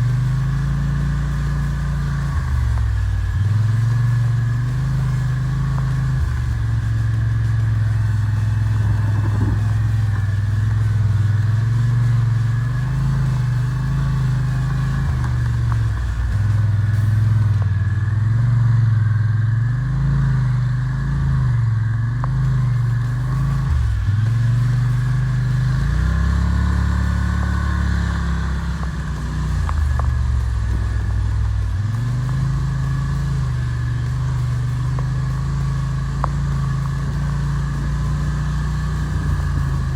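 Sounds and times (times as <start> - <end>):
atv engine running: 0.0 - 39.9.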